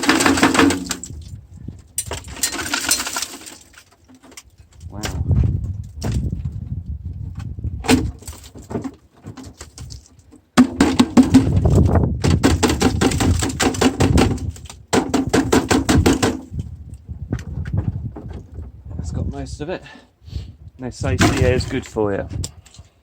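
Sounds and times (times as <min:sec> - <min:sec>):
metal casing rattling and clanging: 0:00.0 - 0:06.5, 0:07.9 - 0:16.6
low wind rumble: 0:00.9 - 0:02.4, 0:04.6 - 0:08.2, 0:11.2 - 0:14.9, 0:15.8 - 0:22.7.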